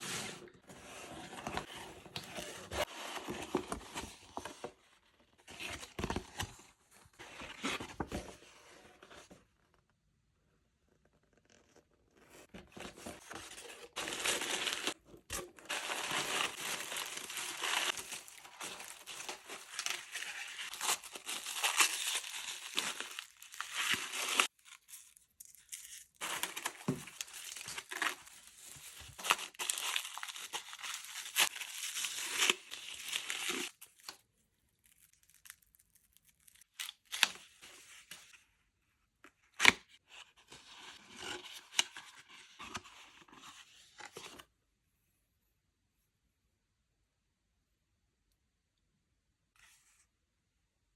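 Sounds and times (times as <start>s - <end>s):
packaging tearing and crinkling: 15.6s - 24.5s, 29.2s - 33.7s.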